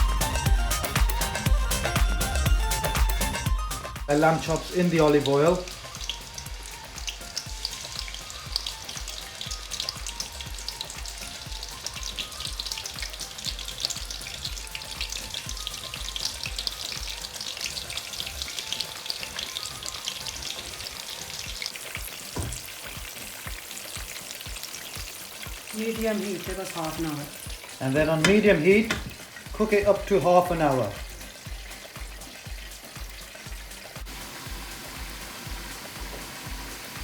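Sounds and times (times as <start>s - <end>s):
meat sizzling in a pan: 0.0s - 37.0s
low thump: 22.4s - 22.7s.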